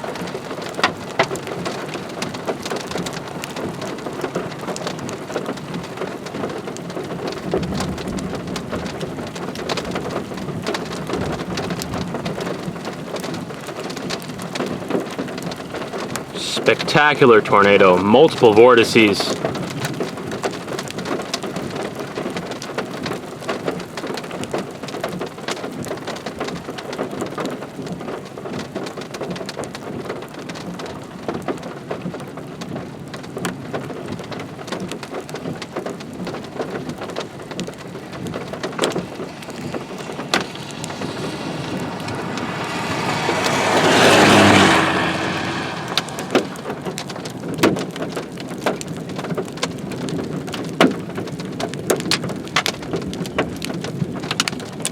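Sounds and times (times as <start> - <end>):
raindrops ticking close by: 0.0 - 54.9
steady rain falling: 0.0 - 54.9
loud rushing noise: 38.2 - 47.8.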